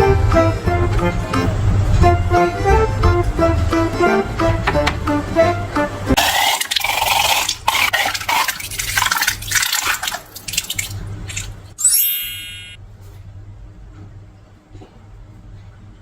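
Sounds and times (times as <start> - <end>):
slime squelching and dripping: 6.2 - 11.8.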